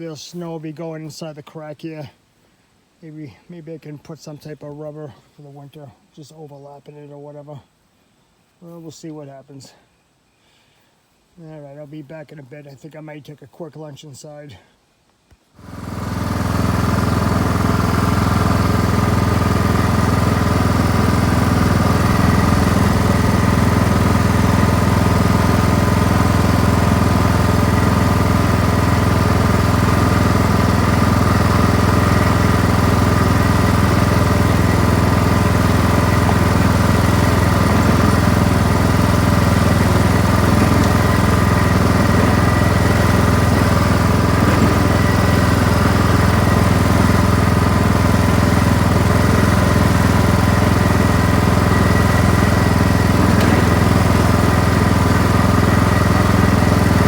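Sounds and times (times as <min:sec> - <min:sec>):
engine running steadily: 0:15.6 - 0:57.0.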